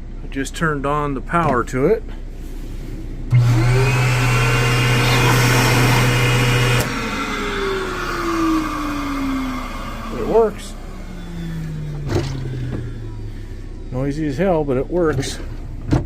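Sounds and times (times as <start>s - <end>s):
vacuum cleaner motor whining: 3.3s - 13.9s.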